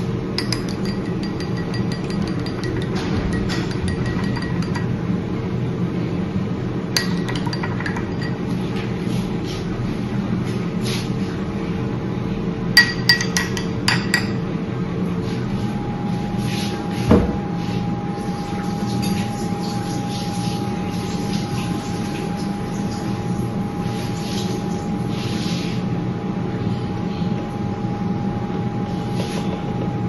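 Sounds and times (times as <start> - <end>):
steady hum: 0.0 - 30.0
kitchenware clinking: 0.4 - 5.0, 7.0 - 8.9, 12.8 - 14.5.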